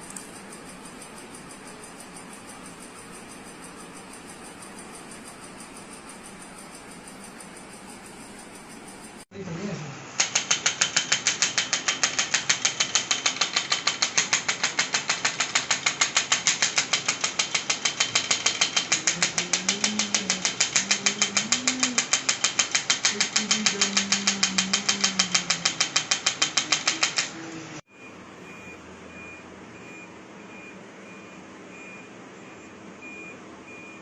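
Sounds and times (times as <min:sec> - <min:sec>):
rapid mechanical clicking: 0:10.2 - 0:27.6.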